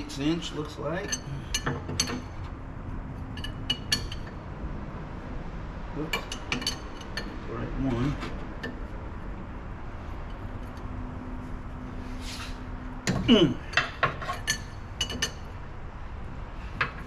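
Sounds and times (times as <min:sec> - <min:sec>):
metal valve parts clinking: 0:00.0 - 0:02.4, 0:06.1 - 0:07.3, 0:13.7 - 0:15.5.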